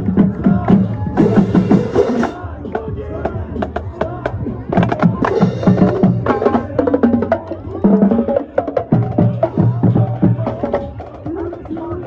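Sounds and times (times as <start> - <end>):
music with clicking percussion: 0.0 - 2.9.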